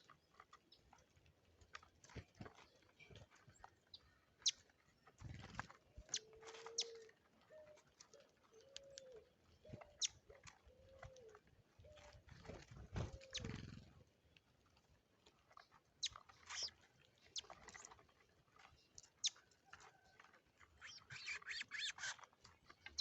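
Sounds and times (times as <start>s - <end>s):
bird chirps: 6.0s - 7.8s, 8.5s - 12.1s, 13.1s - 13.8s, 15.6s - 17.8s, 20.8s - 22.2s
pigeon cooing: 6.1s - 7.8s, 13.0s - 14.0s.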